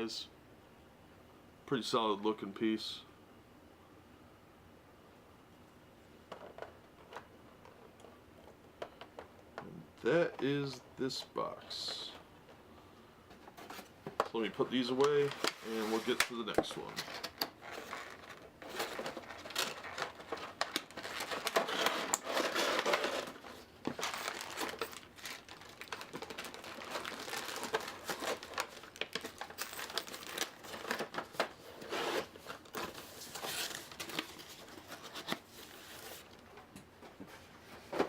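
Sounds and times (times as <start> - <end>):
plastic packaging crinkling: 13.7 - 36.4.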